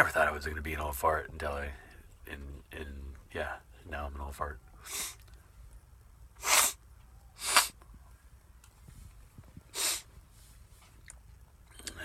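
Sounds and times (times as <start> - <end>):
man blowing breath through nose: 4.8 - 5.2, 6.4 - 6.8, 7.4 - 7.8, 9.7 - 10.1.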